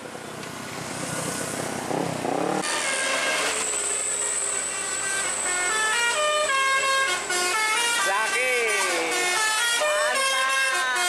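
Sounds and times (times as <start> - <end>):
multi-note air horn melody: 2.6 - 3.8, 4.4 - 11.0.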